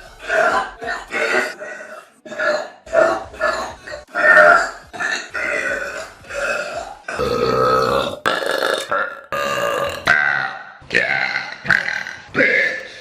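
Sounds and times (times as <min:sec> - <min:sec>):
girls burping: 0:03.4 - 0:10.3.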